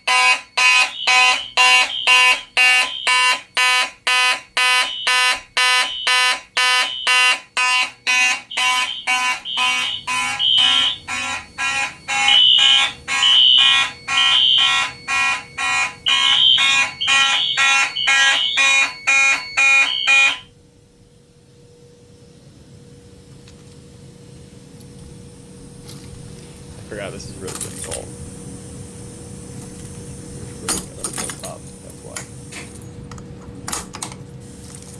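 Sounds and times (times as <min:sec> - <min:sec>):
fire alarm horns pulsing: 0:00.0 - 0:20.5.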